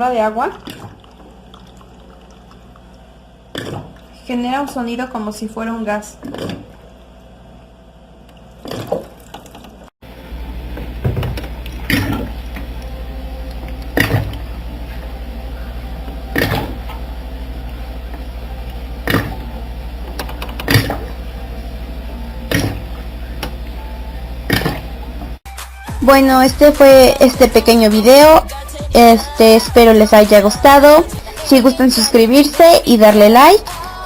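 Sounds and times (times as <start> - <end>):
water dispenser humming: 0.0 - 5.0, 5.9 - 25.4
water gurgling glug: 0.6 - 1.5, 3.5 - 4.1, 6.2 - 6.9, 8.5 - 9.8, 11.2 - 12.6, 13.6 - 14.5, 16.3 - 17.0, 19.0 - 19.6, 20.4 - 21.2, 22.5 - 23.0, 24.4 - 25.0.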